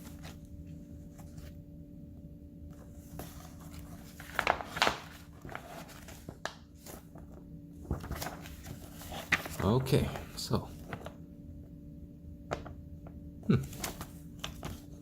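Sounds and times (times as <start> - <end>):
steady low hum: 0.0 - 15.0
paper and packaging rustling: 2.9 - 11.2, 13.7 - 15.0.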